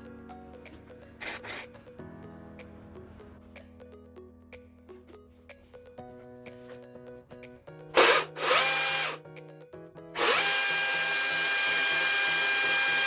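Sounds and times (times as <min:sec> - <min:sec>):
electric chainsaw motor whine: 0:08.0 - 0:09.2, 0:10.2 - 0:13.0.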